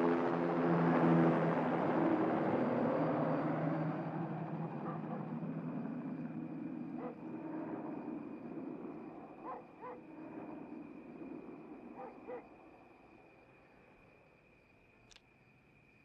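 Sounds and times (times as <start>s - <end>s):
helicopter noise: 0.0s - 12.6s
dog barking: 4.8s - 5.3s, 7.0s - 7.2s, 9.4s - 10.0s, 12.0s - 12.5s.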